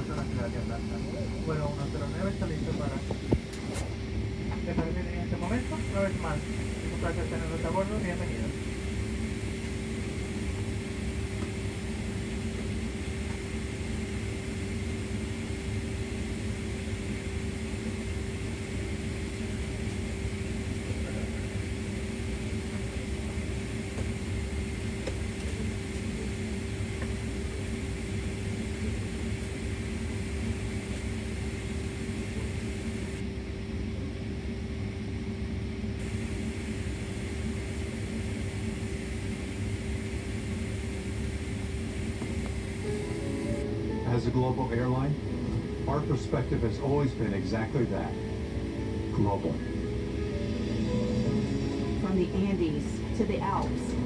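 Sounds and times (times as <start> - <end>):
cabin airflow: 0.0 - 33.3, 35.5 - 54.0
low machinery hum: 0.0 - 54.0.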